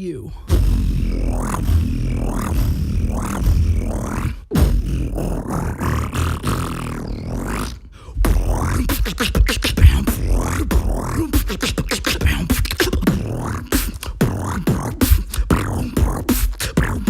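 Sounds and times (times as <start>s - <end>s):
beatboxing: 0.0s - 17.0s.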